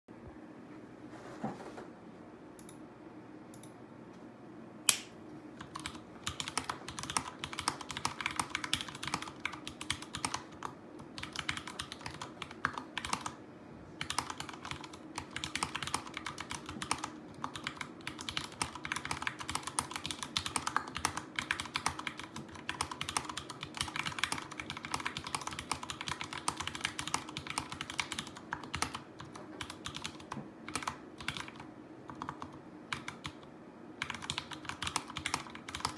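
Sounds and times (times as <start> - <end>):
sharp click: 4.9 - 5.2
mechanical keyboard typing: 5.6 - 13.4, 14.0 - 35.9.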